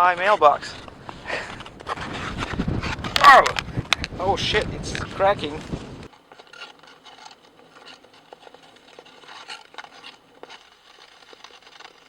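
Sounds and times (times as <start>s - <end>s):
ice cracking: 0.0s - 12.0s
ice skate blades scraping: 0.0s - 12.0s.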